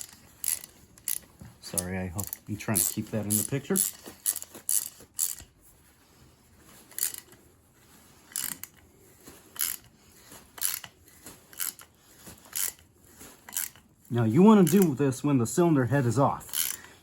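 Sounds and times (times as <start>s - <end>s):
ratchet clicks and squeaks: 0.0s - 5.5s, 6.8s - 7.4s, 8.2s - 8.8s, 9.6s - 9.9s, 10.6s - 13.9s, 14.6s - 15.0s, 16.4s - 17.0s.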